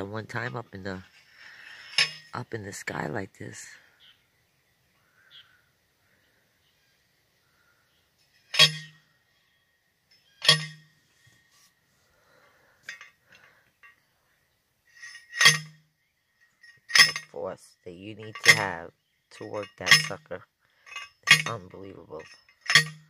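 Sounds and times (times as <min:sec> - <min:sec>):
metallic clinks: 0:01.6 - 0:02.4, 0:08.2 - 0:09.0, 0:10.1 - 0:10.9, 0:12.8 - 0:14.0, 0:14.9 - 0:15.8, 0:16.4 - 0:17.4, 0:18.1 - 0:18.8, 0:19.4 - 0:23.0.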